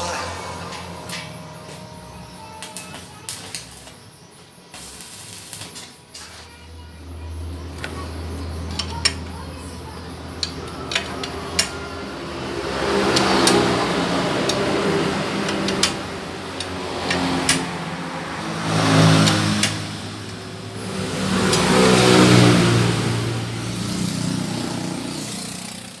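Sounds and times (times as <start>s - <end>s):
petrol engine revving: 0.0s - 4.0s, 7.0s - 26.0s
sharp clicks: 16.6s - 17.7s.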